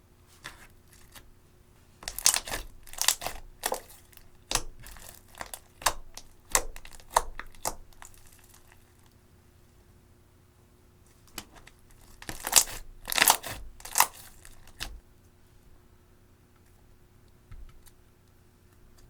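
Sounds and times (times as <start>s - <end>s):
slime crackling pops: 2.1s - 3.9s, 4.5s - 8.4s, 12.3s - 14.9s.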